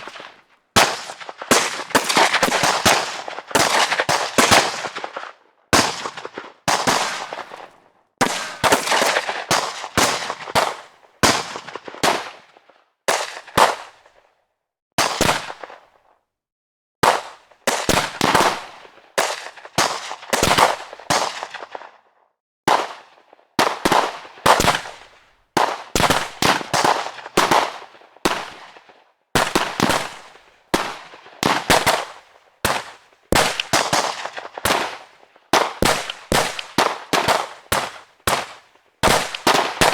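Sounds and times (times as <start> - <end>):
gunshots with echo: 0.0 - 5.2, 5.8 - 12.4, 29.4 - 39.9.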